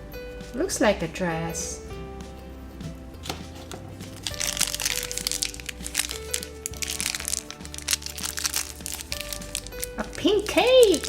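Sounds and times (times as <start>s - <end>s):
light background music: 0.0s - 11.0s
plastic wrapper crinkling: 2.8s - 11.0s.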